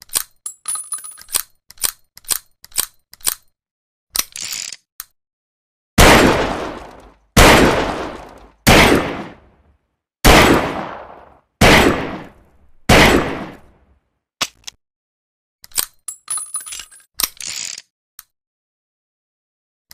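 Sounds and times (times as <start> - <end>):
small clicks: 0.0 - 5.2, 15.6 - 18.3.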